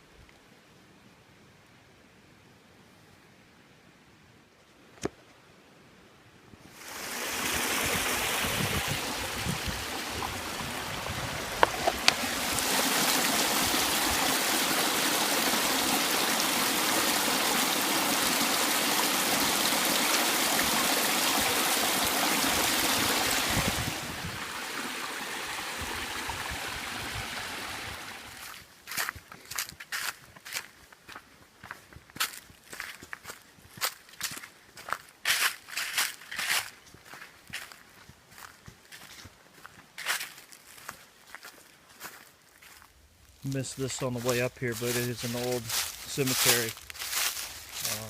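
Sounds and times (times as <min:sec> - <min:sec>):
stream running over rocks: 0:06.7 - 0:29.1, 0:43.5 - 0:48.0.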